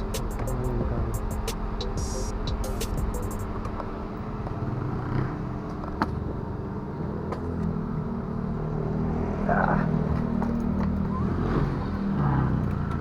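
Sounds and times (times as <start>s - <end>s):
low motor hum: 0.0s - 8.5s.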